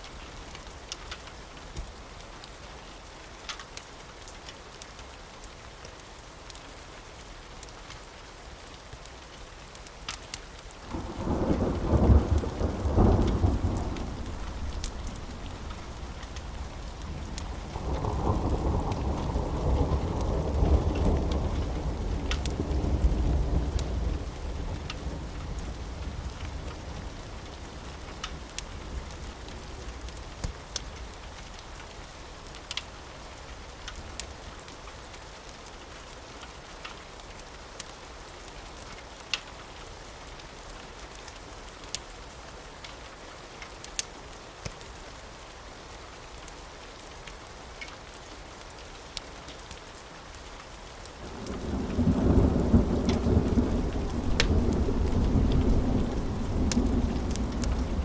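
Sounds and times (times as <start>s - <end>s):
sharp drips and crackles: 0.0s - 58.0s
steady rain: 0.0s - 58.0s
rolling thunder: 10.9s - 26.4s, 51.3s - 58.0s.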